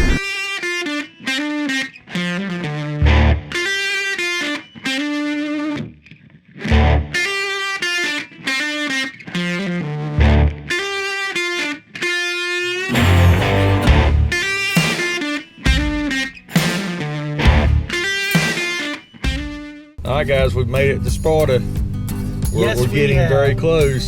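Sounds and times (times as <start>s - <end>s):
distorted electric guitar: 0.0s - 19.9s
deep bass hit: 13.0s - 14.4s, 17.5s - 17.9s.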